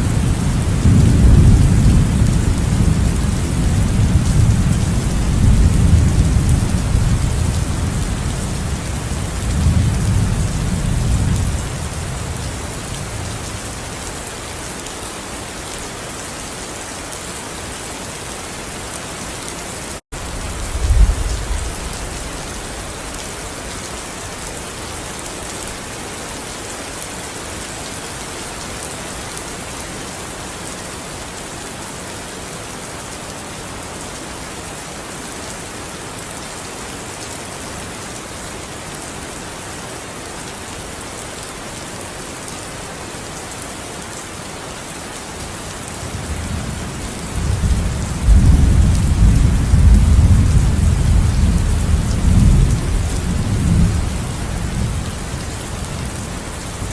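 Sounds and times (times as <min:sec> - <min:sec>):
steady rain falling: 0:00.0 - 0:56.9
deep rumble of thunder: 0:20.3 - 0:22.8, 0:46.5 - 0:55.2.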